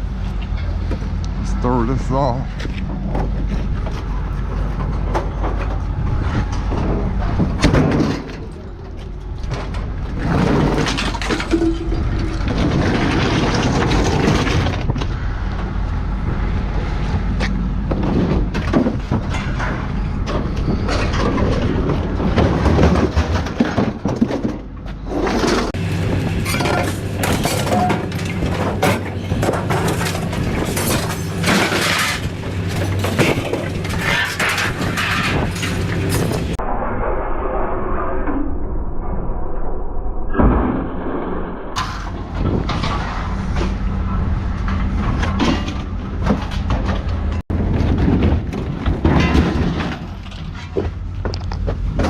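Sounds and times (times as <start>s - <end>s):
scrap metal crashing and clanging: 6.7s - 15.0s, 17.9s - 36.6s, 41.8s - 43.9s, 44.7s - 50.8s
low machine hum: 41.5s - 49.4s.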